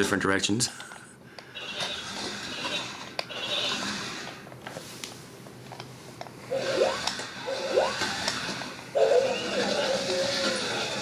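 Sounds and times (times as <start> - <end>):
toy motor whirring: 1.5 - 4.4, 6.5 - 11.0.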